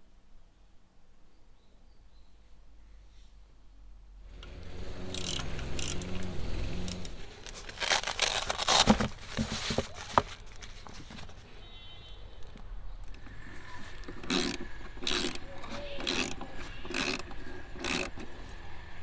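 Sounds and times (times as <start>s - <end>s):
ratcheting wrench clicks: 4.4s - 8.9s, 13.1s - 18.5s
packaging rustling and crinkling: 6.8s - 11.6s.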